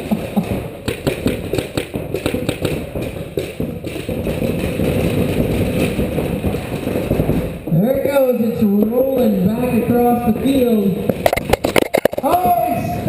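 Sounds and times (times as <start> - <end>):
background noise: 0.0 - 13.0
paintball markers firing: 0.1 - 7.8, 11.1 - 12.6.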